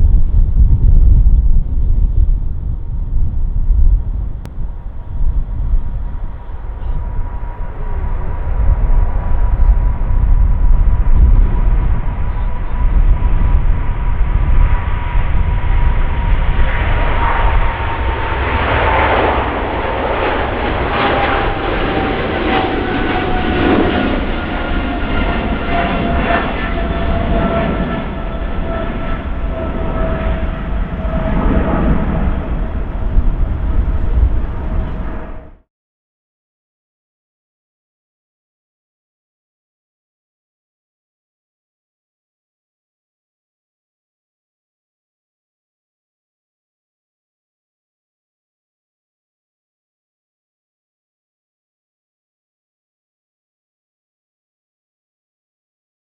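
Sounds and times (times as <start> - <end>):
jet engines roaring and whining: 1.6 - 35.6.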